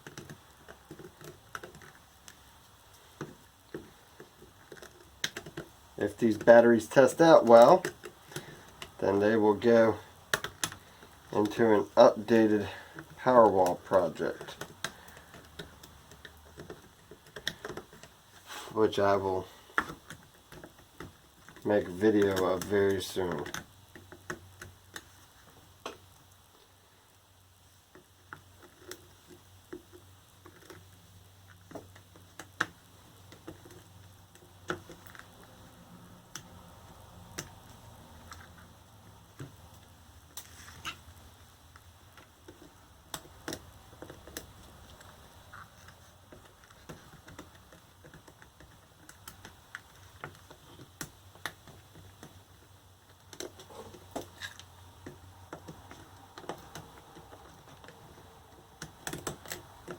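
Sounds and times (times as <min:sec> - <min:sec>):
hand tools scraping plastic: 0:00.0 - 0:25.2, 0:42.1 - 0:59.9.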